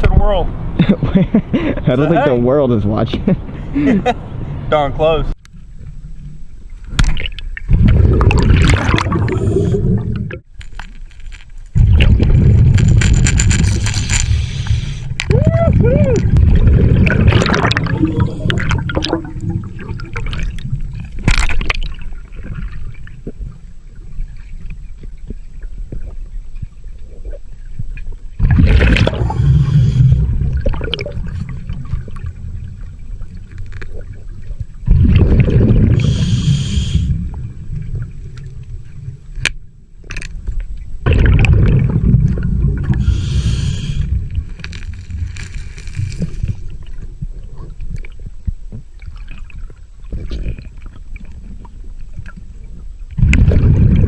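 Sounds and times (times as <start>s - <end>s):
low rumble of moving water: 0.0s - 54.0s
underwater gurgling and bubbling: 5.8s - 10.5s, 11.7s - 54.0s
rush of exhaled bubbles: 7.2s - 10.5s, 11.8s - 23.5s, 28.4s - 32.9s, 33.9s - 38.6s, 41.0s - 47.9s, 53.2s - 54.0s.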